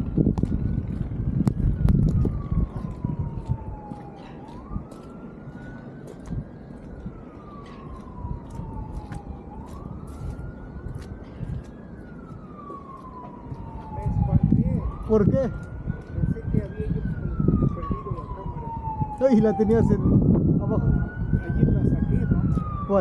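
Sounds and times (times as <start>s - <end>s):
emergency vehicle siren wailing: 0.0s - 23.0s
wind buffeting microphone: 0.0s - 23.0s.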